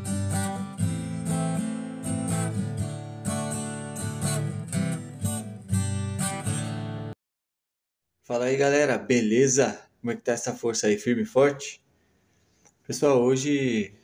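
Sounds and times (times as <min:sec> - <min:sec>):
acoustic guitar strumming: 0:00.0 - 0:07.2.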